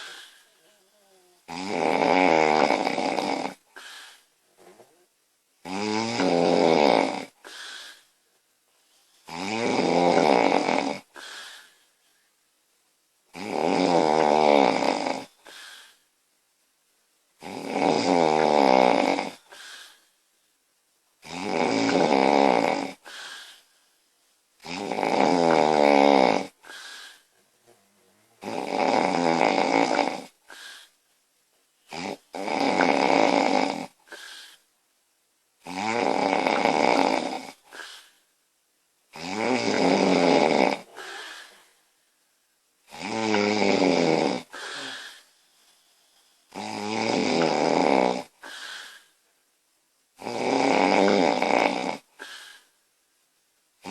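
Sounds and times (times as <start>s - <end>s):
woman snoring loudly: 0.0s - 4.0s, 5.6s - 7.9s, 9.3s - 11.3s, 13.3s - 15.3s, 17.4s - 19.5s, 21.2s - 23.4s, 24.6s - 27.2s, 28.4s - 30.9s, 31.9s - 34.5s, 35.6s - 38.1s, 39.1s - 41.6s, 42.9s - 45.2s, 46.5s - 49.1s, 50.2s - 52.6s.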